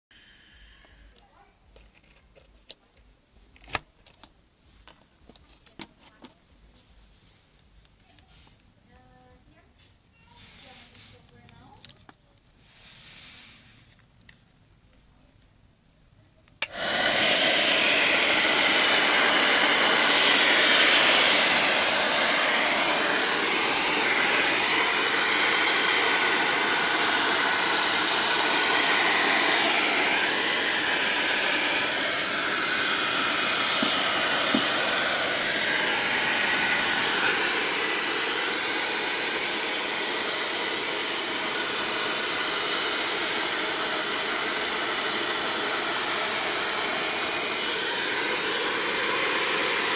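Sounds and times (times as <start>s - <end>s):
hair dryer blowing air: 0.1s - 1.3s, 16.6s - 49.9s
hair dryer switch click: 16.6s - 17.6s, 33.1s - 35.7s.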